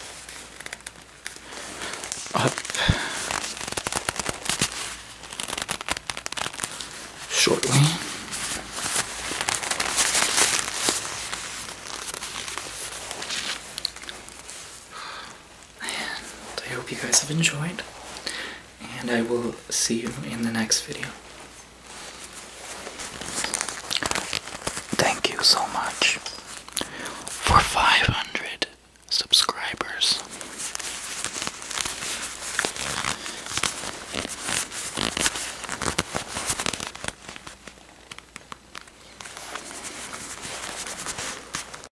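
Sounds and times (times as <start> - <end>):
leather rustling and crinkling: 0.0 - 18.2, 20.6 - 27.4, 30.2 - 41.9.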